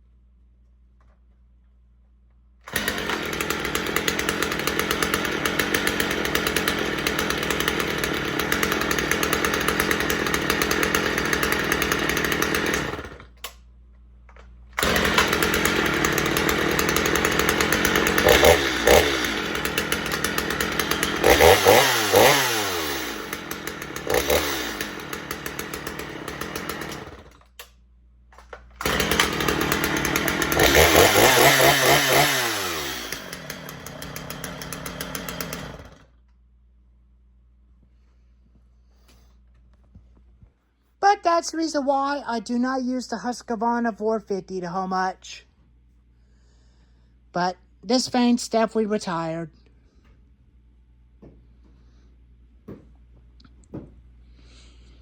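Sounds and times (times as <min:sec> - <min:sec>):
chainsaw engine revving: 0:02.7 - 0:13.4, 0:14.8 - 0:27.4, 0:28.8 - 0:36.1.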